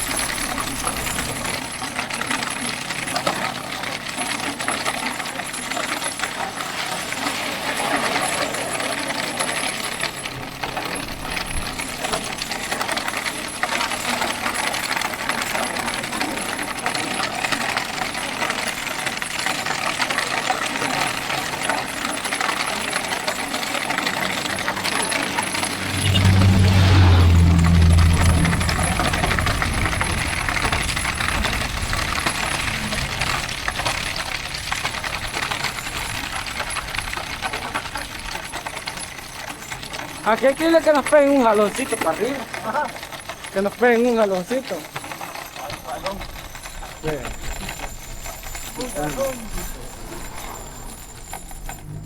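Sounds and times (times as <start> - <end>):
cart wheels rattling and grinding: 0.0 - 52.0
loud low rumble: 24.4 - 33.2.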